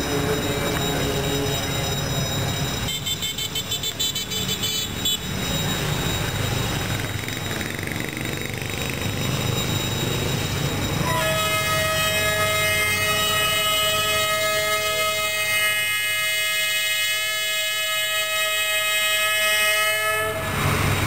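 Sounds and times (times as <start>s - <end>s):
train rumbling on rails: 0.0s - 21.0s
train horn blast: 11.0s - 20.6s.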